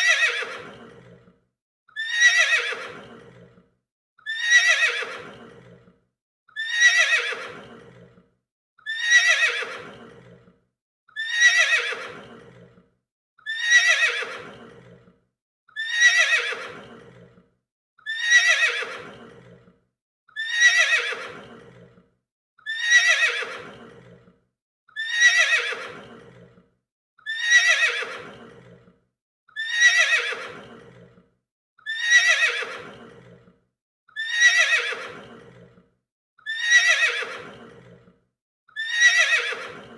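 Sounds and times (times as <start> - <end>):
horse neighing: 2.0 - 3.5, 4.3 - 5.9, 6.6 - 8.1, 8.9 - 10.4, 11.2 - 12.7, 13.5 - 15.0, 15.8 - 17.3, 18.1 - 19.6, 20.4 - 21.9, 22.7 - 24.2, 25.0 - 26.5, 27.3 - 28.8, 29.6 - 31.1, 31.9 - 33.4, 34.2 - 35.7, 36.5 - 38.0, 38.8 - 39.9.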